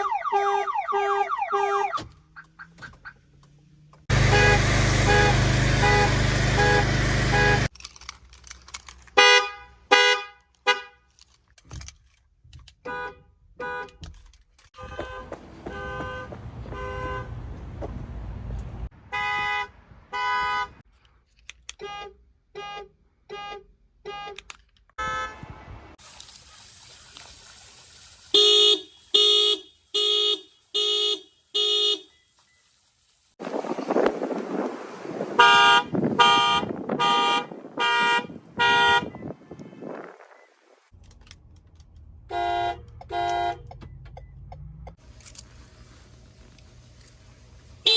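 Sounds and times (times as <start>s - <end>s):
car alarm horn honks: 0.0s - 2.0s, 4.1s - 7.7s, 25.0s - 25.5s, 35.4s - 39.3s, 42.3s - 43.8s
traffic rumble: 0.0s - 47.9s.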